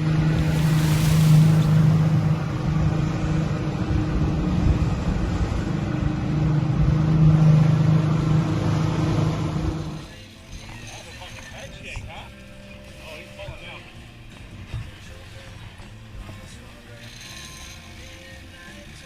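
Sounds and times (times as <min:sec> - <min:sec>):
water rushing past hull: 0:00.0 - 0:04.6
wind: 0:00.0 - 0:19.0.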